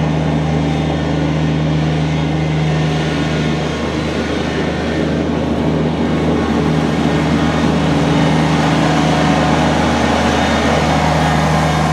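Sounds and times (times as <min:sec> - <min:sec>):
tractor diesel engine running: 0:00.0 - 0:11.9.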